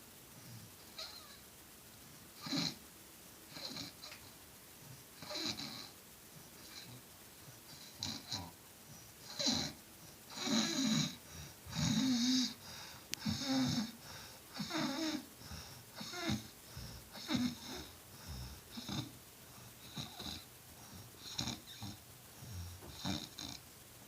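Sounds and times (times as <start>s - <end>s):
person snoring: 7.8s - 8.6s, 9.3s - 19.1s, 19.8s - 23.6s.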